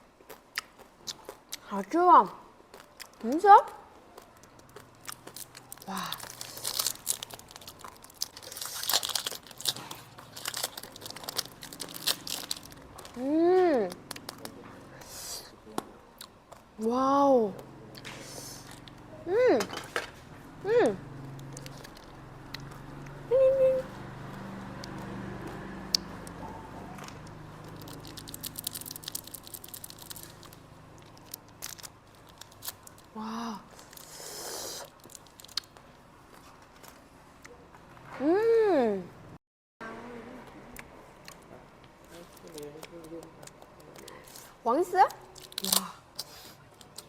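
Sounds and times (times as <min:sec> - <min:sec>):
plastic wrapper crinkling: 0:04.3 - 0:13.2, 0:27.6 - 0:33.1, 0:34.9 - 0:35.8.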